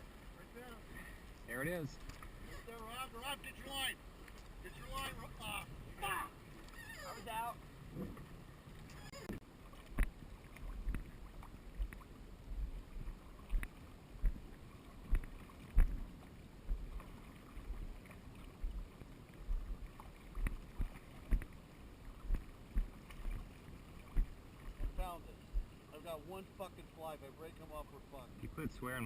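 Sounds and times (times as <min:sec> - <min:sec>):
knocks and thumps from boat: 0:06.9 - 0:10.2, 0:24.1 - 0:25.7.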